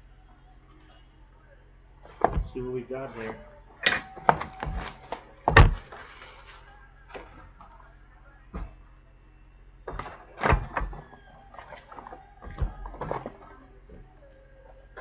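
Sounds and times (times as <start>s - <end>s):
cardboard thumps and taps: 3.9s - 5.9s
sharp knock on box: 3.9s - 5.9s
cardboard rustling tear: 4.6s - 6.7s.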